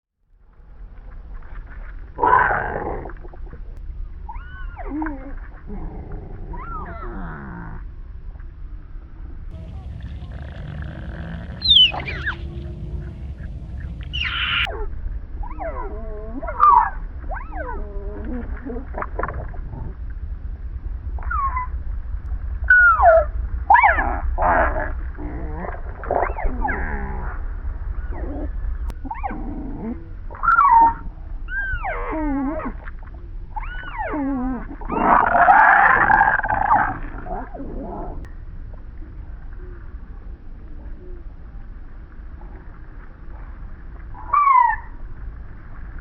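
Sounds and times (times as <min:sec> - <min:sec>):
low rumble: 0:00.2 - 0:46.0
slowed gopher calls groaning: 0:09.5 - 0:14.7.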